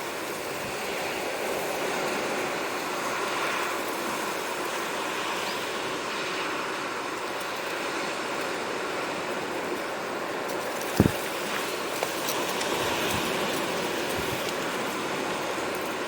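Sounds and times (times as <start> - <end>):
sea waves washing on shore: 0.0 - 16.0.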